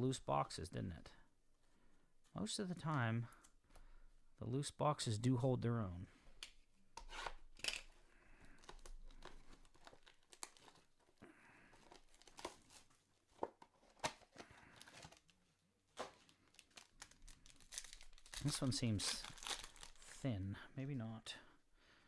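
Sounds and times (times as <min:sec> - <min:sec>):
cards and packaging clicking: 0:06.4 - 0:11.1, 0:11.7 - 0:20.1
wrappers crinkling and tearing: 0:08.5 - 0:20.2.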